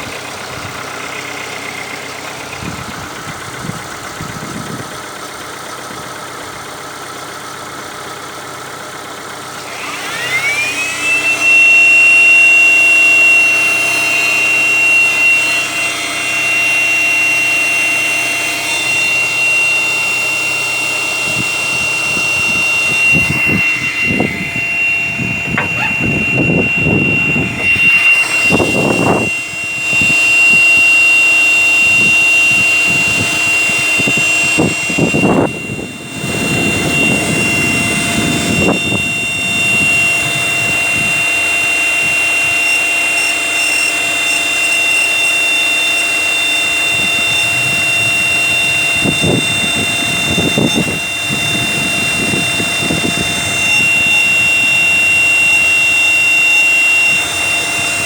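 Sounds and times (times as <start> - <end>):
air pump humming: 9.6 - 58.0
high-pitched whistle: 9.7 - 58.0
low rumbles: 22.0 - 29.5.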